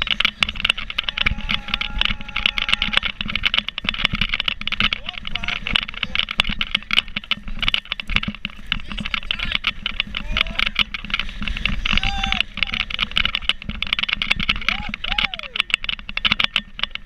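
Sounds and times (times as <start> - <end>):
person crying out: 12.0 - 12.8, 14.7 - 15.6.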